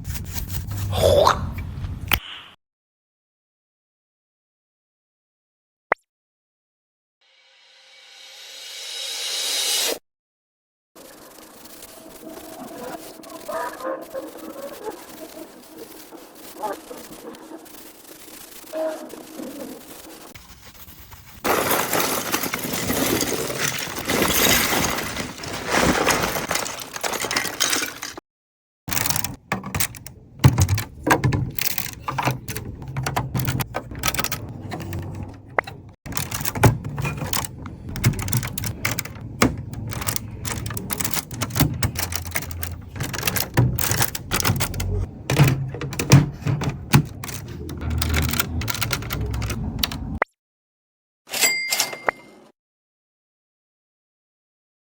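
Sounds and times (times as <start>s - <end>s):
brush scrubbing plastic: 11.0s - 27.4s
plastic bricks clattering: 21.4s - 28.2s, 28.9s - 50.2s.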